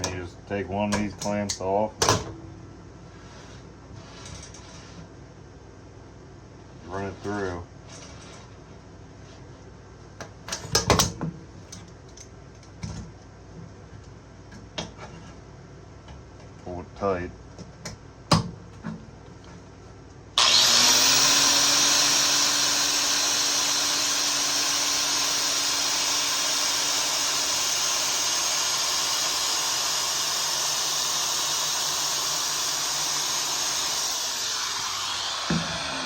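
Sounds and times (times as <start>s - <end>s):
power tool abrasive wheel humming: 20.4s - 36.0s.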